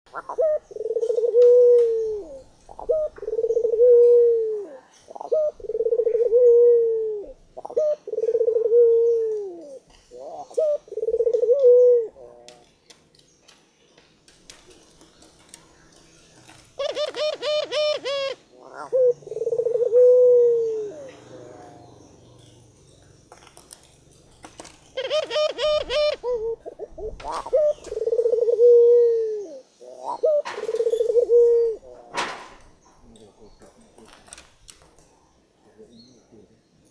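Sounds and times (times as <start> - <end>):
dove cooing: 0.1 - 12.6, 16.7 - 22.6, 24.6 - 32.2.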